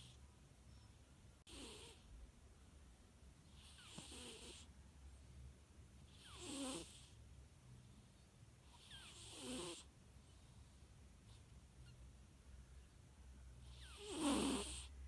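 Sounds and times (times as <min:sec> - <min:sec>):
cat snoring softly: 0:01.5 - 0:02.1, 0:03.4 - 0:04.7, 0:06.1 - 0:07.2, 0:08.6 - 0:12.0, 0:13.6 - 0:15.0.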